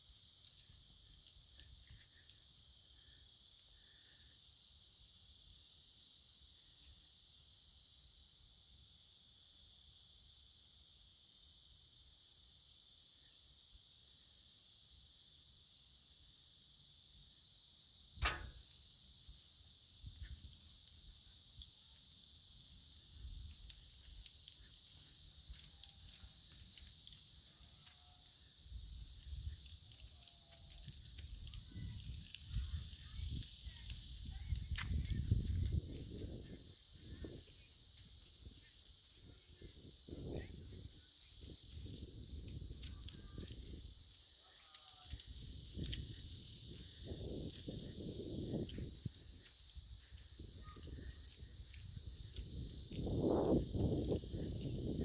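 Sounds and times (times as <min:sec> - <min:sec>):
insects chirring: 0:00.0 - 0:55.0
sharp click: 0:18.2 - 0:18.7.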